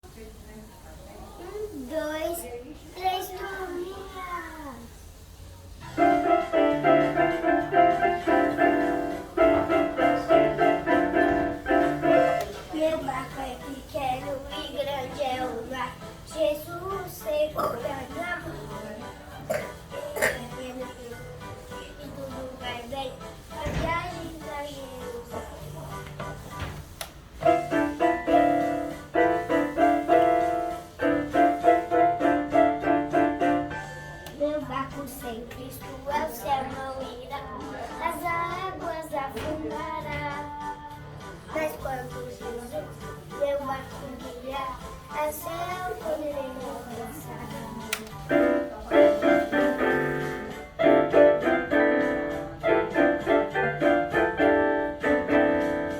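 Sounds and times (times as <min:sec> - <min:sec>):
keyboard chords over bass line: 0:05.9 - 0:12.5, 0:48.3 - 0:55.9.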